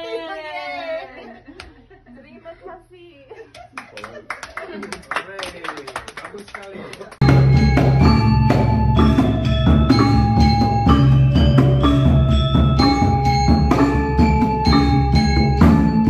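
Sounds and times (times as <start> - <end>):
metallophones struck: 7.2 - 16.0.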